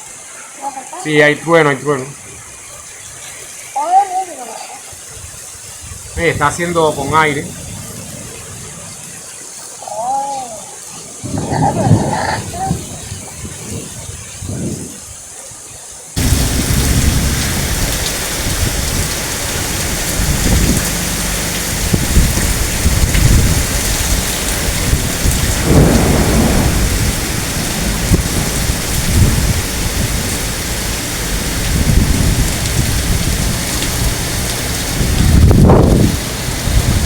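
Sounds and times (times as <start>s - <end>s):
heavy rain pouring: 0.0s - 37.0s
thunder rumbling: 6.4s - 9.3s, 11.2s - 14.9s, 16.2s - 37.0s.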